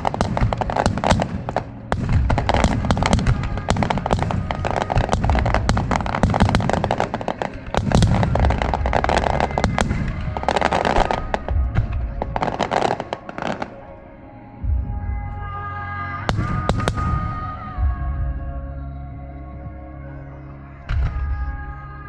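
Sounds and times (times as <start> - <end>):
fireworks booming: 0.0 - 13.8, 16.3 - 18.1
fireworks cracking: 0.0 - 13.8, 16.3 - 17.6.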